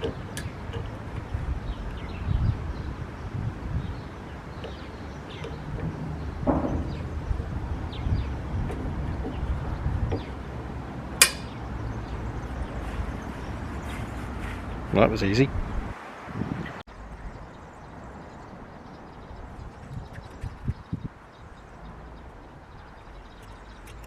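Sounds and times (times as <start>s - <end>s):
fitting clicking and knocking: 0.0s - 2.0s, 4.6s - 7.1s, 11.2s - 11.6s
low outdoor rumble: 0.0s - 24.0s
sharp click: 11.2s - 11.6s.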